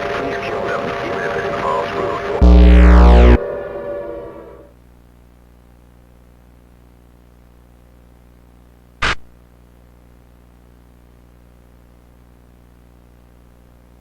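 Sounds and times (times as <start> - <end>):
sudden burst of noise: 0.2 - 4.7
low electrical hum: 2.4 - 3.5, 4.7 - 14.0.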